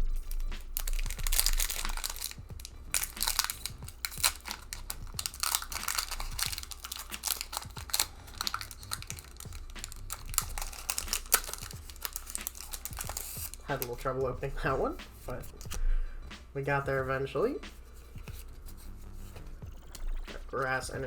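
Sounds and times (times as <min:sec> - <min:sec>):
foil wrapper crinkling and tearing: 0:00.0 - 0:14.1.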